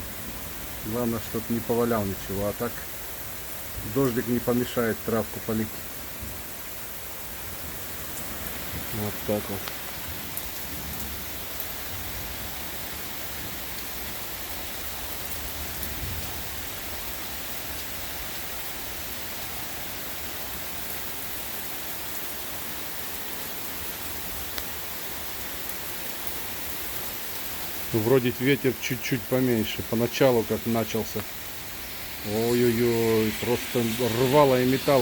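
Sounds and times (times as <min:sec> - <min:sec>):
low rumbles of wind: 0:00.0 - 0:19.1, 0:28.6 - 0:35.0
heavy rain pouring: 0:00.0 - 0:35.0.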